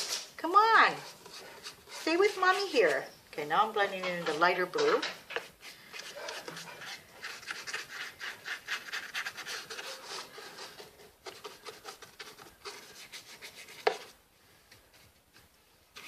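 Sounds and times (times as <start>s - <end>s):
paintbrush scrubbing on cardboard: 0.7s - 3.1s, 5.5s - 14.2s.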